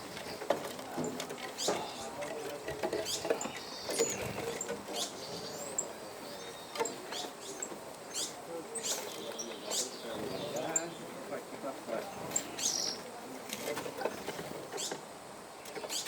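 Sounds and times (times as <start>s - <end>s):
light tapping and scratching: 0.0s - 5.9s
small birds chirping: 0.0s - 16.0s.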